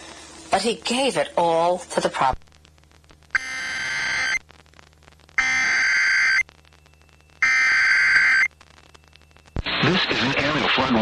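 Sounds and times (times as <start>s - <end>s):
warbling digital data tones: 3.3s - 4.4s, 5.4s - 10.0s.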